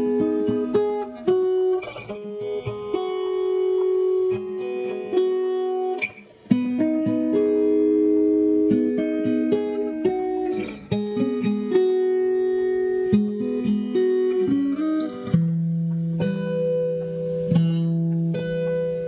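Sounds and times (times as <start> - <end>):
guitar plucked and strummed: 0.0 - 19.0.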